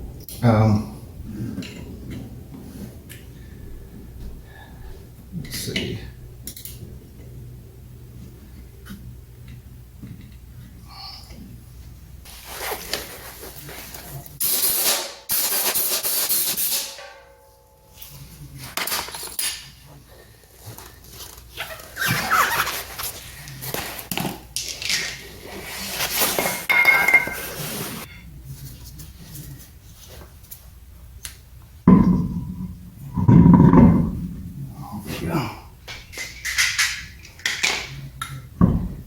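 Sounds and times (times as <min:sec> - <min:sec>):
tool and metal clatter: 0:26.1 - 0:28.3, 0:35.9 - 0:38.0
rustling and knocking: 0:31.9 - 0:34.7.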